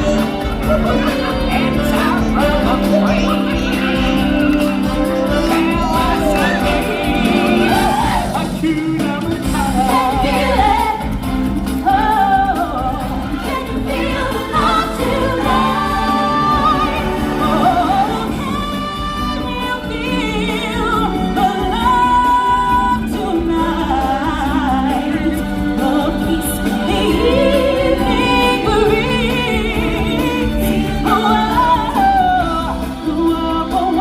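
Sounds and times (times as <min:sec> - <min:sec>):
choir singing: 0:00.0 - 0:11.2, 0:11.8 - 0:34.0
stage show accompaniment: 0:00.0 - 0:34.0
singers holding long notes: 0:11.8 - 0:34.0.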